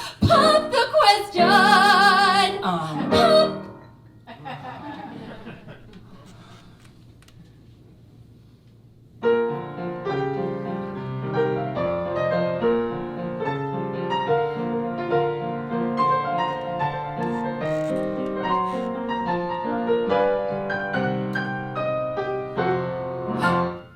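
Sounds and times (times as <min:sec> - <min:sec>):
piano playing chords: 0:00.2 - 0:04.2, 0:09.2 - 0:23.9.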